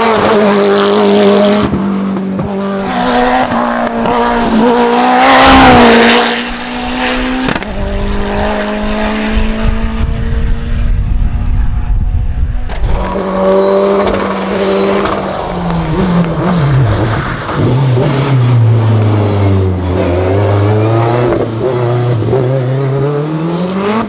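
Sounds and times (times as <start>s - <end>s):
race car engine shifting gears: 12.7s - 24.0s.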